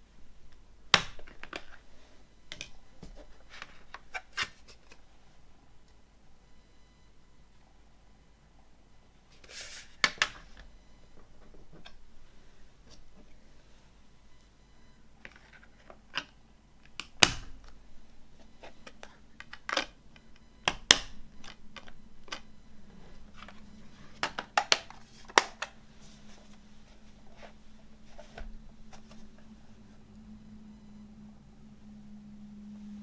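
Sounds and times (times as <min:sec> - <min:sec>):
packaging clicks and rustles: 0:18.4 - 0:29.5.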